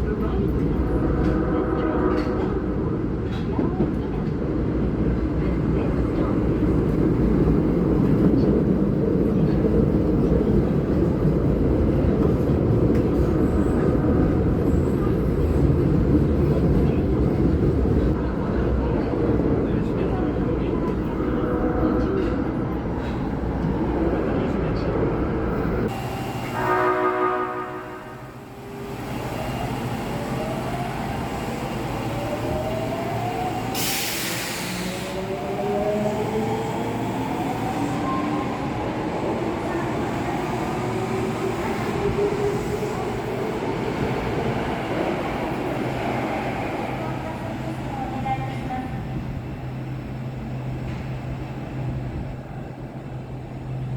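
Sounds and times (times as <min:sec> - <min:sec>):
subway train rumbling: 0:00.0 - 0:53.9.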